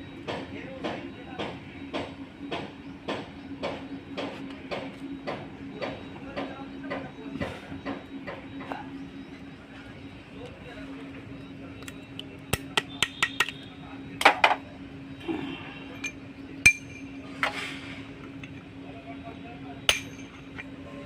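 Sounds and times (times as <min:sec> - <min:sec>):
steady low hum: 0:00.0 - 0:21.0
metal tools clinking and tapping: 0:16.0 - 0:17.1.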